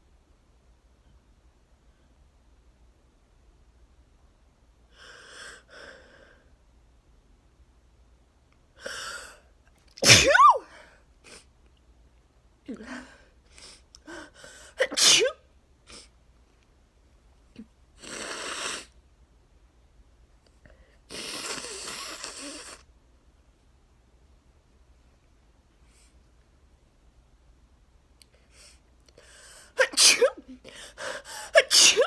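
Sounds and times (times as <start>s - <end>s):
person sneezing: 10.0s - 10.8s, 14.8s - 15.4s, 29.8s - 32.0s.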